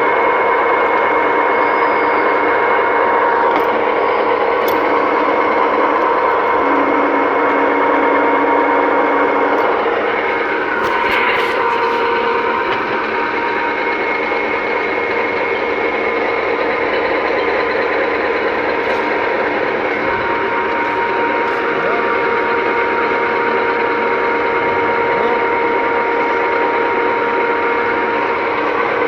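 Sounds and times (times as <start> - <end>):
lathe running with whining tones: 0.0 - 29.0.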